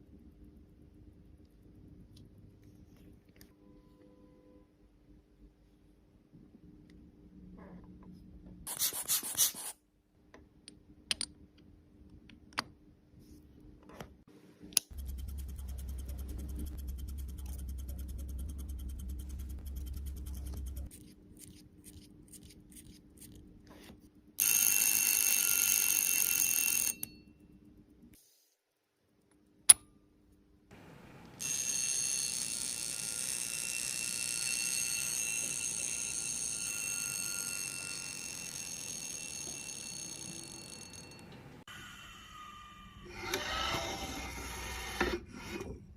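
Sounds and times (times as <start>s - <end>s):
low hum: 14.8s - 21.0s
alarm watch buzzing ring: 14.9s - 20.9s, 24.4s - 27.5s, 31.4s - 41.6s.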